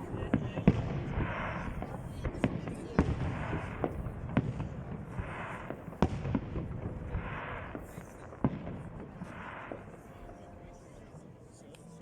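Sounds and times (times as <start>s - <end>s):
firework pops and crackling: 0.0s - 10.4s
firework bangs: 0.0s - 11.2s.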